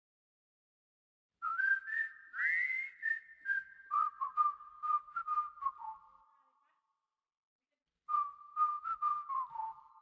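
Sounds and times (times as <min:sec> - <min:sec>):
high gliding whistles: 0:01.5 - 0:06.4.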